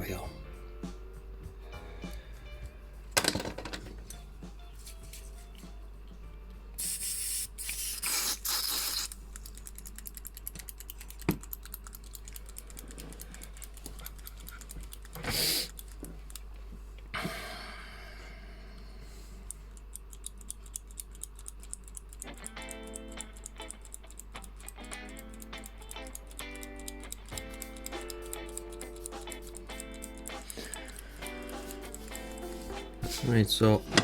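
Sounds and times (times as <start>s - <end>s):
low mains hum: 0.0s - 6.8s, 9.1s - 34.0s
parts clicking and tapping: 3.2s - 4.2s, 9.3s - 16.5s, 19.5s - 32.2s
short hissing bursts: 6.8s - 9.2s, 15.2s - 15.8s.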